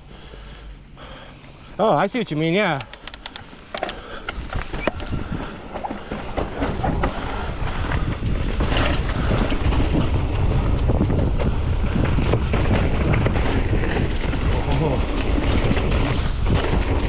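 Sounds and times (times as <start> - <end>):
bike tyres on dirt trail: 0.3 - 17.0
bike rattles and knocks: 2.5 - 7.5.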